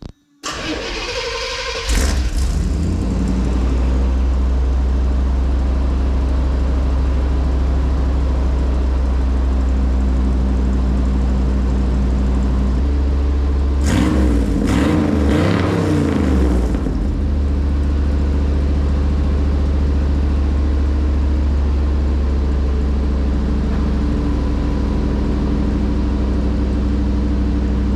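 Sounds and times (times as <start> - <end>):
engine idling: 0.4 - 27.9
engine revving: 0.5 - 4.1, 13.8 - 17.6.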